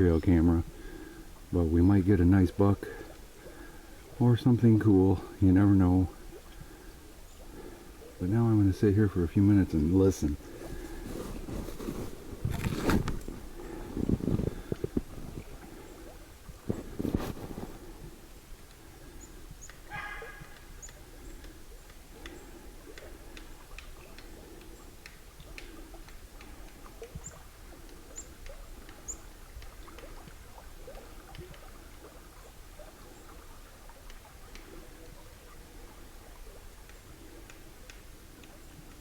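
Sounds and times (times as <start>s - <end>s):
small clicks and ticks: 20.4s - 39.0s.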